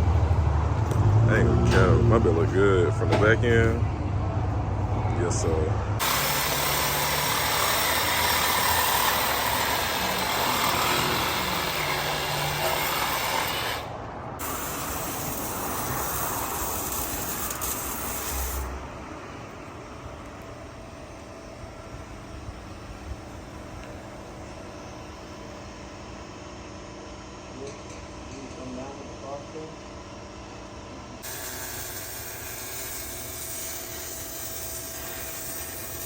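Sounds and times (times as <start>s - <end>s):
low engine hum: 0.0s - 6.0s
road and wind noise: 0.0s - 7.0s, 7.6s - 24.1s.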